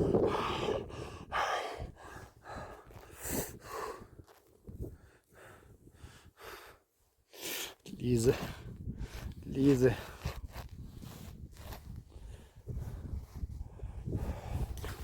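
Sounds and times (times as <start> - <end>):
person breathing hard: 0.0 - 4.2, 4.9 - 7.8, 12.1 - 15.0.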